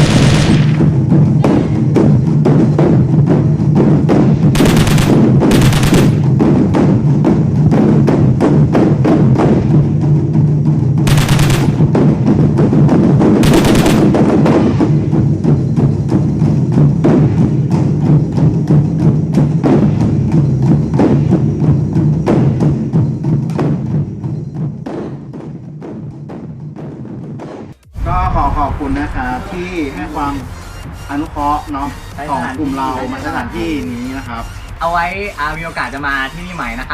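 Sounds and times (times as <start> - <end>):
loud crash-like bursts: 0.0 - 1.2
music with driving drum beat: 0.0 - 27.9, 29.7 - 36.9.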